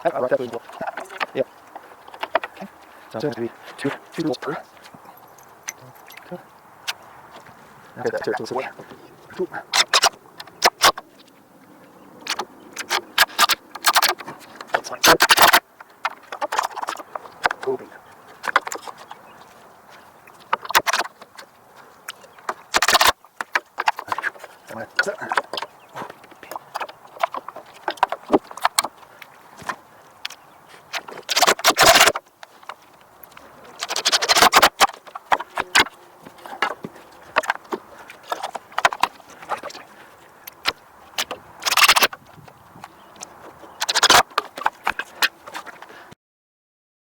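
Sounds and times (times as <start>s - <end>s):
rapid clicking: 12.2s - 17.8s, 22.1s - 29.0s, 29.6s - 39.8s, 40.5s - 42.2s.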